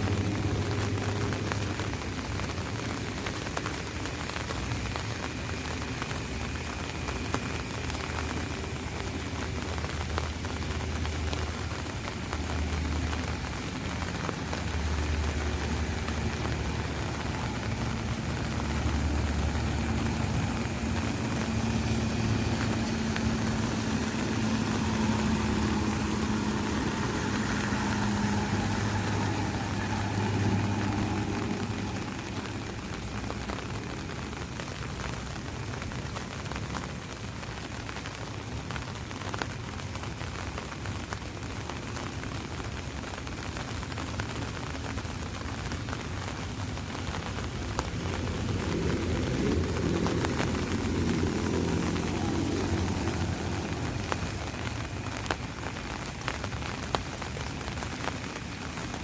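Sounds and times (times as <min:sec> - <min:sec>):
low vehicle engine hum: 0:00.0 - 0:59.0
rain on an umbrella: 0:00.0 - 0:59.0.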